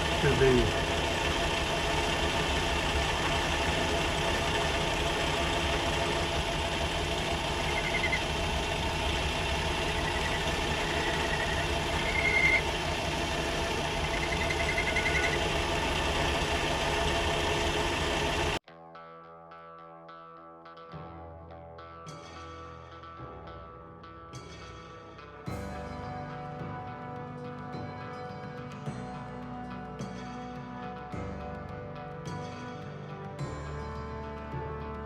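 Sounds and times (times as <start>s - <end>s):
metal lathe running: 0.0s - 18.6s.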